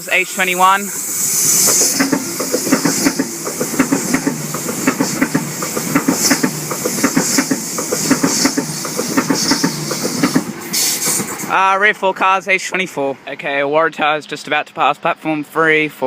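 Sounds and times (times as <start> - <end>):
high hiss bursts: 0.0 - 11.7
train wheels clacking over rail joints: 1.1 - 11.5.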